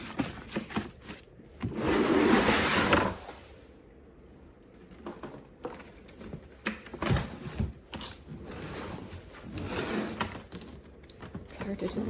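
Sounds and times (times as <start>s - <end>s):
suitcase scraping rasp: 1.6s - 3.4s, 8.3s - 10.5s.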